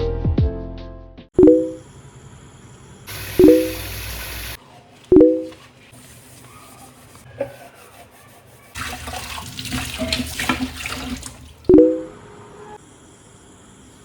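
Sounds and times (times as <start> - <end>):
water running from tap into sink: 3.1 - 4.6, 8.8 - 11.7.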